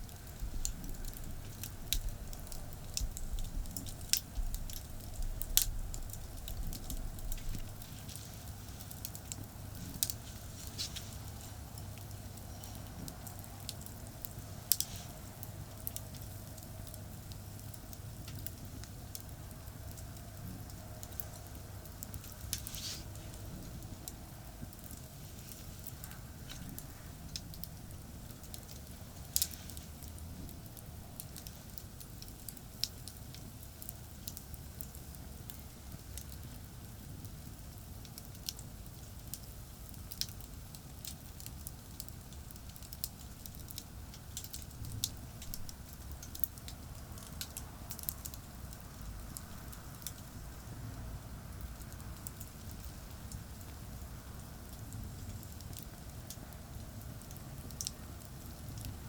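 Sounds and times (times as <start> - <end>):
distant traffic rumble: 0.0 - 38.6
campfire crackling and popping: 0.0 - 59.0.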